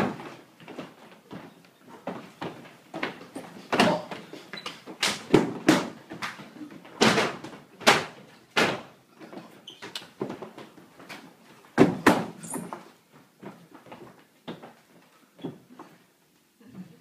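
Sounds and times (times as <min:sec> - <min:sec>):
sharp thuds and slaps of blows: 0:07.0 - 0:08.9.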